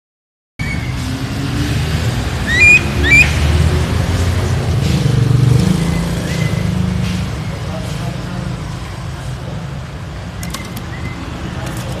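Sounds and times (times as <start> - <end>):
starling whistles: 2.4 - 3.4.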